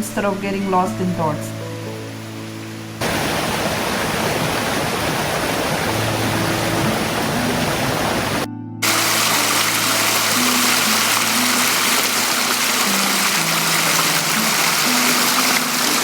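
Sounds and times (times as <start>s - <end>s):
soft background music: 0.0s - 3.1s, 5.2s - 16.0s
rushing creek water: 1.6s - 16.0s.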